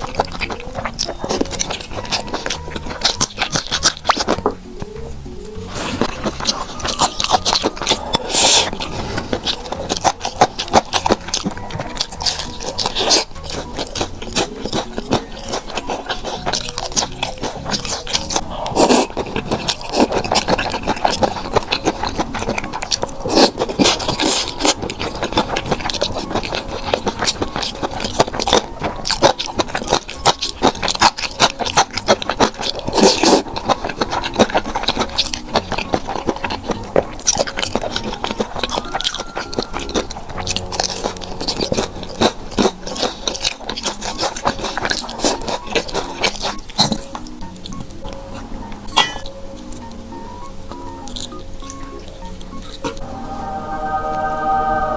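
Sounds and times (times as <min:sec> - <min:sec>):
mouth clicks and crackles: 0:00.0 - 0:53.0
person chewing food: 0:00.0 - 0:53.1.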